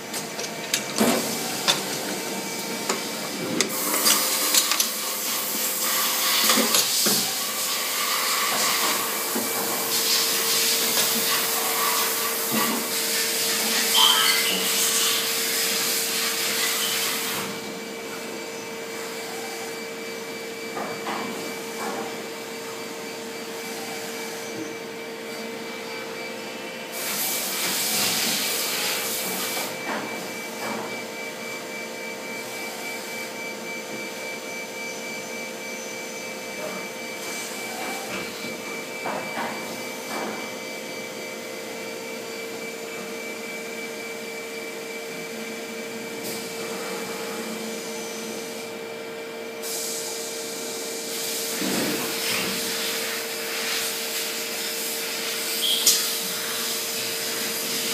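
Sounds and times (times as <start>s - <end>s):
factory machinery humming: 0.0s - 7.6s.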